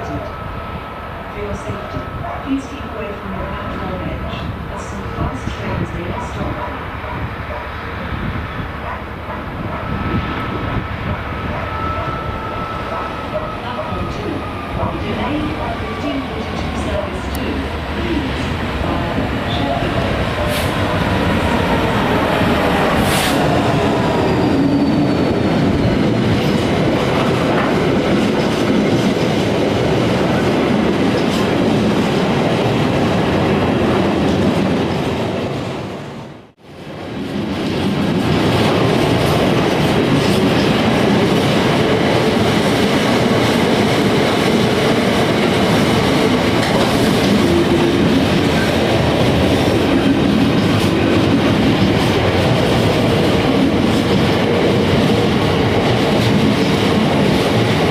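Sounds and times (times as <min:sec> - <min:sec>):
freight train passing: 0:00.0 - 0:57.9.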